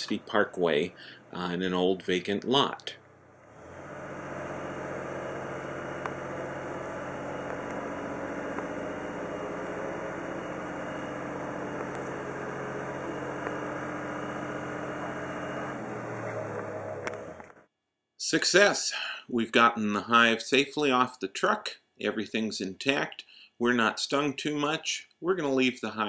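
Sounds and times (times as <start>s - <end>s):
truck engine running: 0.0s - 1.4s, 3.0s - 17.6s.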